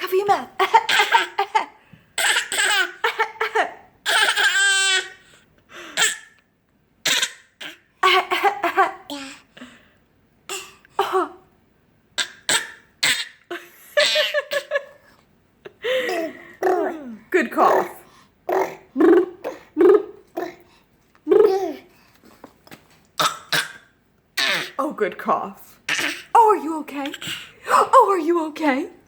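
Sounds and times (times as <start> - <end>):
child fake coughing: 0.6 - 4.6, 7.0 - 9.4, 10.5 - 11.4, 12.2 - 13.4, 23.2 - 24.7
child laughing and giggling: 13.5 - 15.0.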